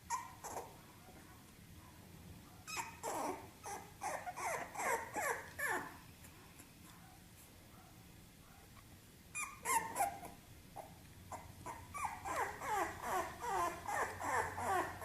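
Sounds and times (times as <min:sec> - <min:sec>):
dog whimpering and whining: 0:00.0 - 0:00.8, 0:02.7 - 0:06.0, 0:09.4 - 0:15.0.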